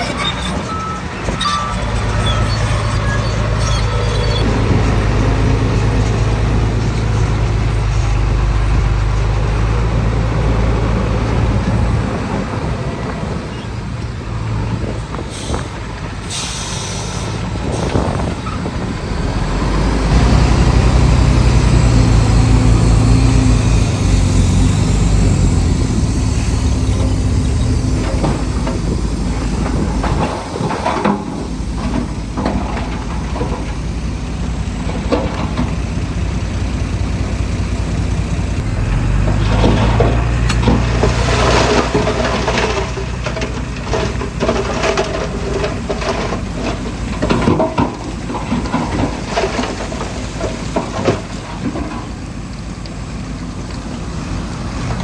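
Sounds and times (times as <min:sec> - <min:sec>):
diesel earthmoving machinery: 0:00.0 - 0:55.0
air brake hiss: 0:16.3 - 0:17.4.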